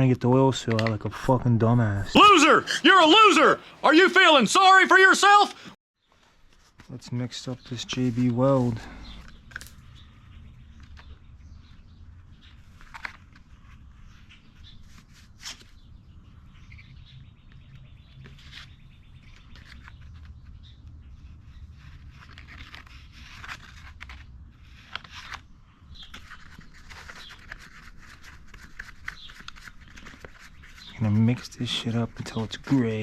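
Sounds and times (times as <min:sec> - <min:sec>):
scratching and scraping: 0:21.2 - 0:33.0.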